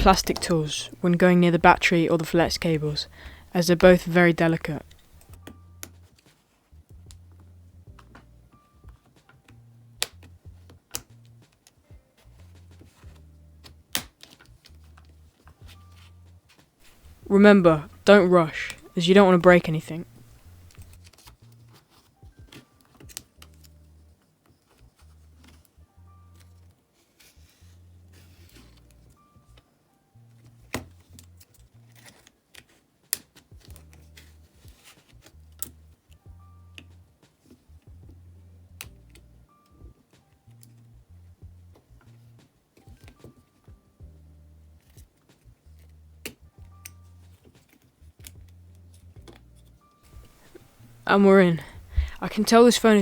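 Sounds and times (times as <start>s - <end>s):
prying tools clicking and tapping: 0.0s - 5.4s.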